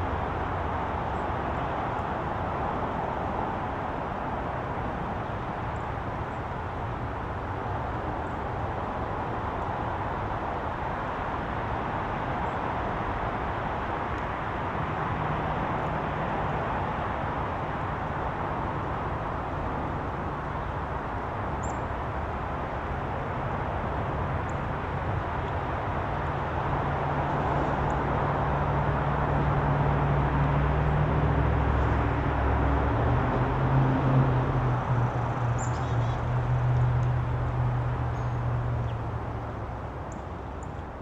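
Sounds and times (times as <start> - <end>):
low engine hum: 0.0 - 41.0
faint bird chirps: 35.6 - 36.2.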